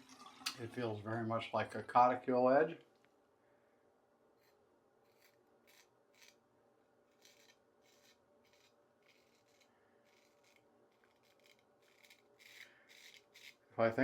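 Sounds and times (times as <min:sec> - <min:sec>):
straight razor scraping stubble: 0:04.4 - 0:06.4, 0:07.1 - 0:13.6.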